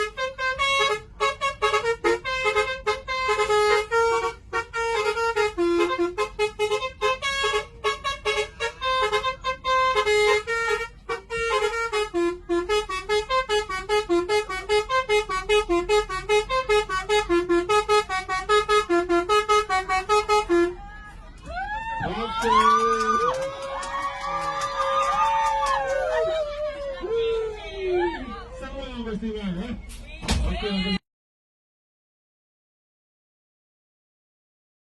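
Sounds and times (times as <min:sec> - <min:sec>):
bus air horns playing a tune: 0:00.0 - 0:21.2.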